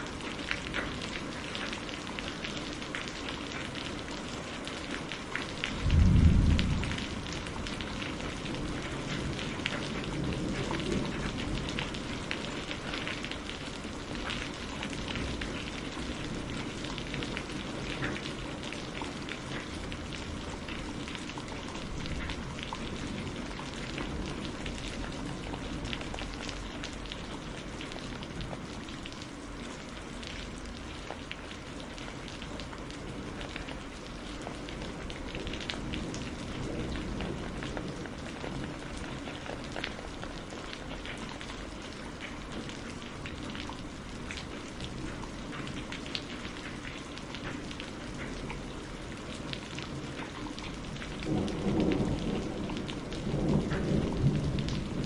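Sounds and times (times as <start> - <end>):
heavy rain: 0.0 - 55.0
raindrops hitting hard surface: 0.0 - 55.0.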